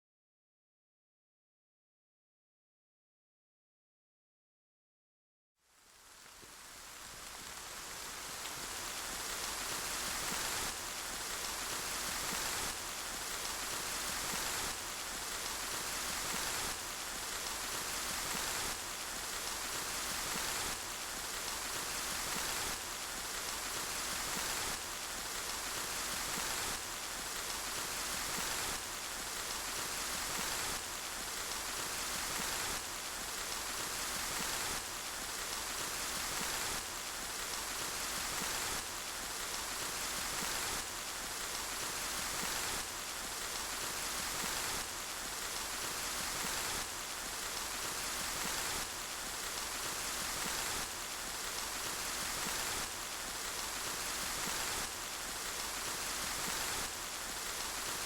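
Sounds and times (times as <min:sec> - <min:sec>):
steady rain falling: 0:05.6 - 0:58.0.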